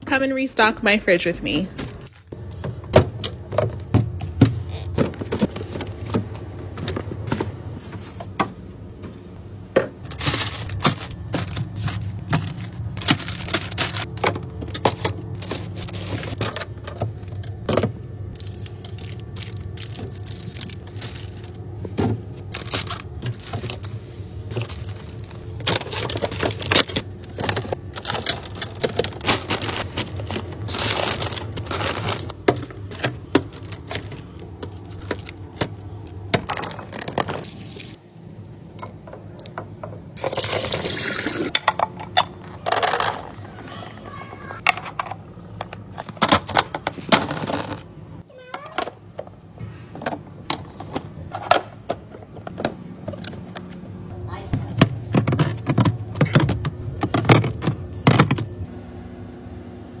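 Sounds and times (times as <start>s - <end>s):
steady low hum: 0.0s - 48.3s, 49.0s - 60.0s
containers clicking and clattering: 24.5s - 38.0s, 40.2s - 43.4s, 54.8s - 58.6s.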